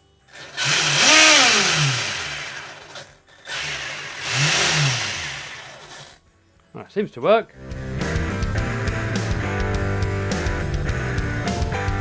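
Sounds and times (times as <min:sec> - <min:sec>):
electric motor whine: 0:00.0 - 0:06.2.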